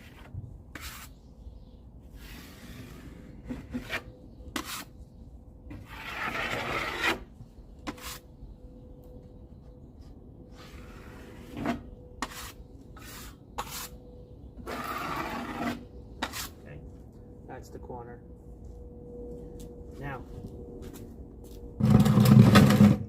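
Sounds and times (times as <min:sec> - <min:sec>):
drywall blade scraping compound: 0:00.0 - 0:01.2, 0:02.2 - 0:04.9, 0:05.7 - 0:07.3, 0:10.6 - 0:13.9, 0:14.6 - 0:16.6.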